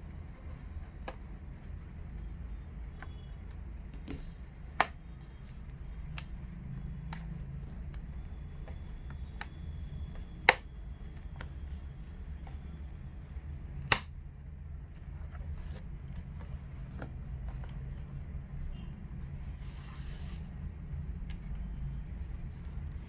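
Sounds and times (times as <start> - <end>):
low steady hum: 0.0 - 23.0
laptop handling clicks: 10.4 - 10.7, 13.8 - 14.2
loud snaps: 13.9 - 14.1.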